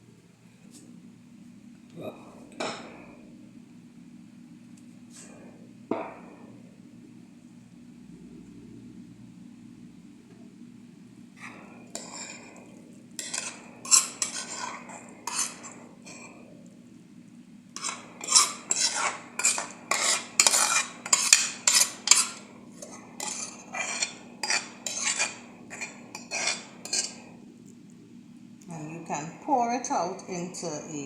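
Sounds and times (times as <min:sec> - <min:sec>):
spoon scraping a pot: 0:11.4 - 0:16.4, 0:17.8 - 0:27.4.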